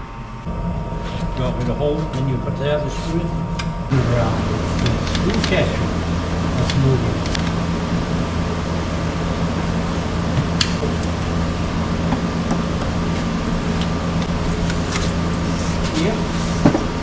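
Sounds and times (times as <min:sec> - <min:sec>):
mechanical hum: 0:00.0 - 0:17.0.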